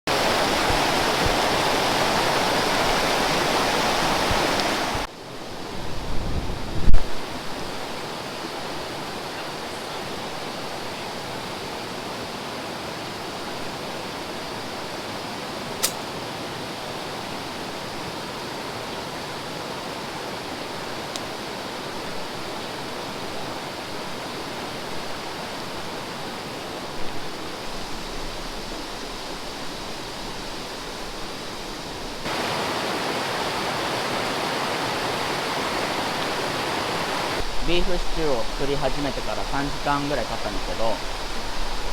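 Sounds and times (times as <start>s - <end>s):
stream water flowing: 0.1s - 41.9s
sharp click: 15.8s - 16.1s.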